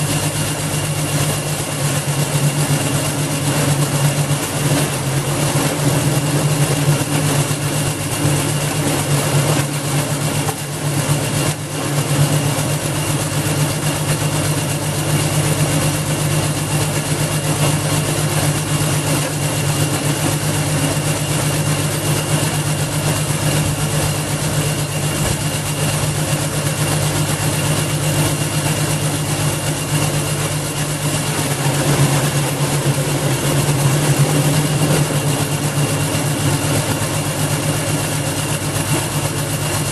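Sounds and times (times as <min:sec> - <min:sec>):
wood chipper engine running: 0:00.0 - 0:39.9
high whine: 0:16.4 - 0:39.4.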